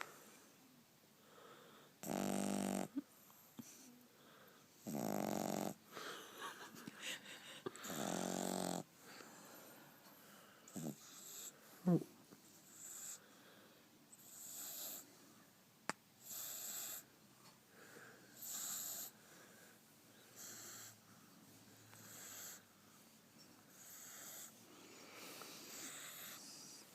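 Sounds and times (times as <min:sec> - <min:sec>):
puppy snoring faintly: 0:02.0 - 0:04.0, 0:04.7 - 0:06.0, 0:07.8 - 0:08.9, 0:10.7 - 0:13.3, 0:14.1 - 0:15.2, 0:16.2 - 0:17.1, 0:18.3 - 0:19.2, 0:20.3 - 0:21.1, 0:21.8 - 0:22.7, 0:23.7 - 0:26.9.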